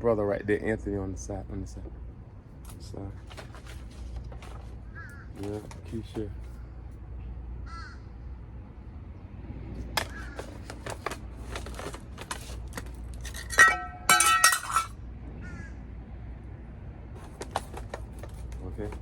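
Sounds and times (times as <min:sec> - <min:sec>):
clicks and knocks of hard objects: 0:02.7 - 0:06.3, 0:09.8 - 0:14.9, 0:17.2 - 0:19.0
loud ringing clinking clatter: 0:13.2 - 0:15.0.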